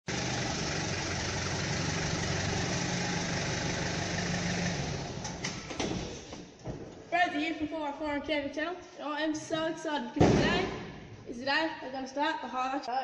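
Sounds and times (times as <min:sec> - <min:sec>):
vehicle engine idling: 0:00.0 - 0:05.8.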